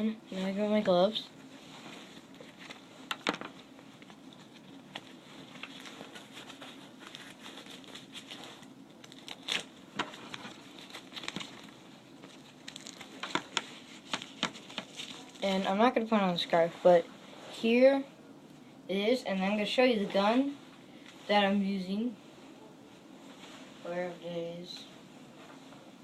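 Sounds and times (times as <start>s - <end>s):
fabric rustling: 1.4s - 15.6s.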